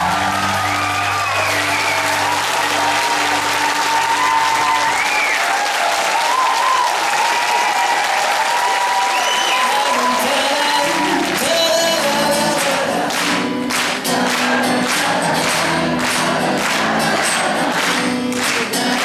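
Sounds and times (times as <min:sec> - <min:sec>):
audience clapping and cheering: 0:00.0 - 0:19.0
whistles: 0:00.6 - 0:02.3, 0:04.7 - 0:05.6, 0:09.0 - 0:09.9.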